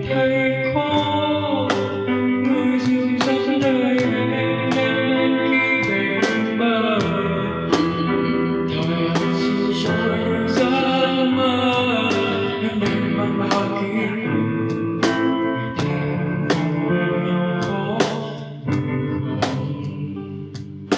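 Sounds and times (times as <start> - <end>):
person singing: 0.0 - 20.8
guitar: 0.0 - 20.9
percussion hits: 1.7 - 2.2, 2.8 - 5.0, 5.8 - 11.1, 11.7 - 14.0, 14.7 - 16.8.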